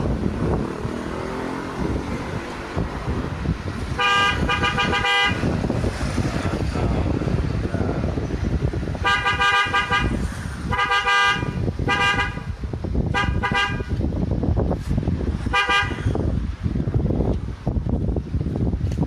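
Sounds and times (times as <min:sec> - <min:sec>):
car horn honking: 0:04.0 - 0:05.5, 0:09.0 - 0:14.0, 0:15.5 - 0:16.2.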